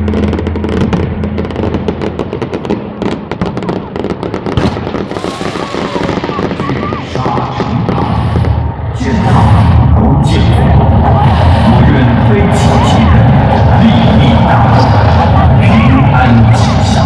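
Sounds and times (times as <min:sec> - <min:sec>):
fireworks crackling: 0:00.0 - 0:09.8.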